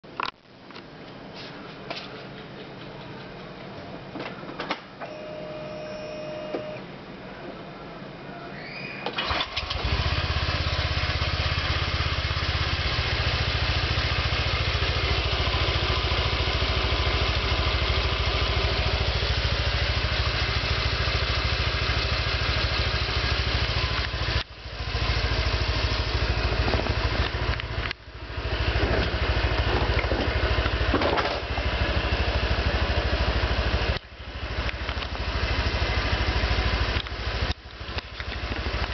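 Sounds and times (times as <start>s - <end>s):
scooter engine running: 9.2s - 38.9s.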